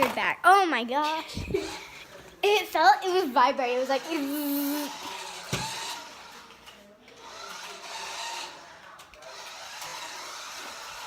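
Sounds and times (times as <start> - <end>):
toy car electric motor whirring: 3.0 - 11.0.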